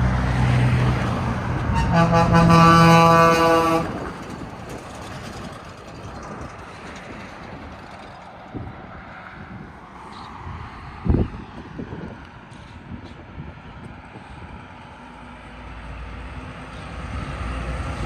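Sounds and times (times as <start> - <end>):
truck engine passing: 0.0 - 11.4, 14.5 - 18.0
road and wind noise: 0.0 - 18.0
air horn: 1.7 - 4.0.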